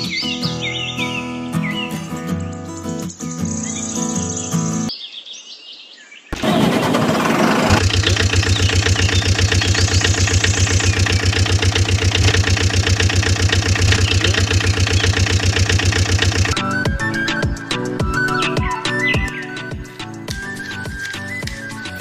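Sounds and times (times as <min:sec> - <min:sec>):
engine starting and running: 0:06.4 - 0:16.6.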